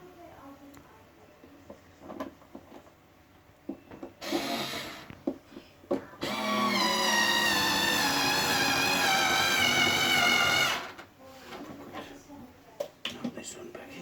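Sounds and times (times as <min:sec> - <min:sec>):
small electric motor whine: 0:06.2 - 0:11.0.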